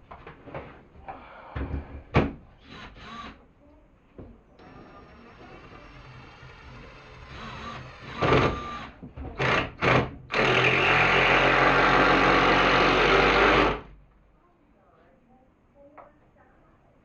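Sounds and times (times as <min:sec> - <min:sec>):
impact driver driving screw: 0:04.6 - 0:13.8.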